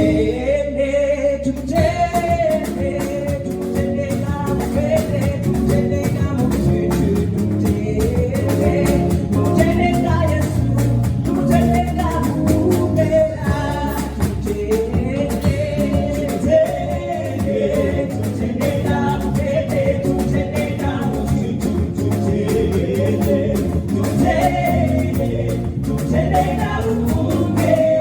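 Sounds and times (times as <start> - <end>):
gospel worship music: 0.0 - 28.0
group singing over instruments: 0.0 - 28.0.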